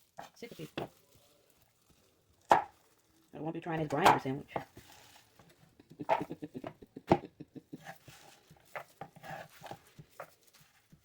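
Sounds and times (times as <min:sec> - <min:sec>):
knife chopping on cutting board: 0:02.5 - 0:02.7.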